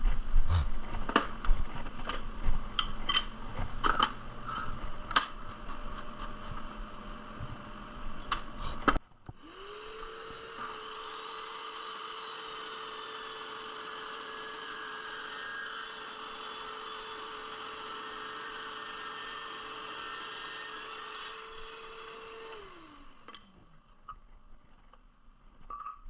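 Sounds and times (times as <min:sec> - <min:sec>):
scroll saw running: 0:05.5 - 0:23.5.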